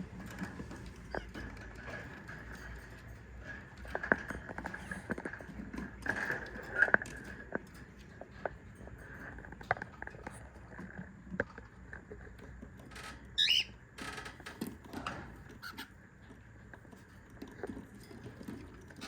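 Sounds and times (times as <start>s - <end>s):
cockatiel chirp: 13.4s - 13.7s.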